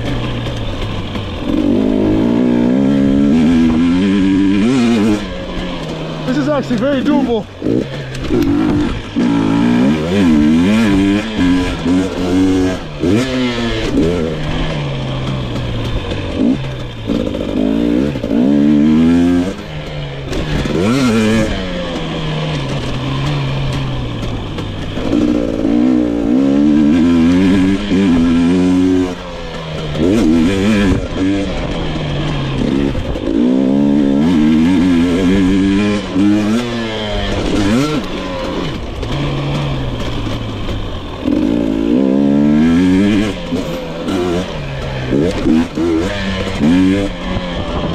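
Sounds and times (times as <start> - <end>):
dirt bike engine revving: 0.0 - 47.9.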